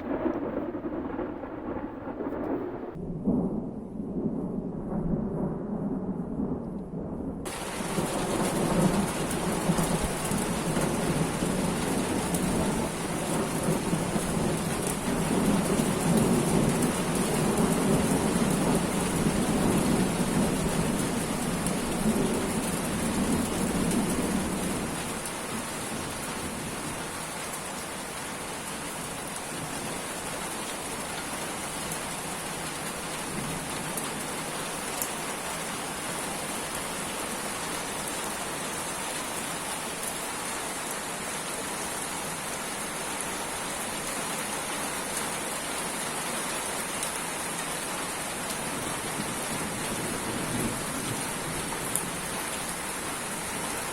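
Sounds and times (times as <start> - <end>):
thunder rumbling: 0.0 - 27.0, 48.4 - 53.9
heavy rain falling: 0.0 - 53.9.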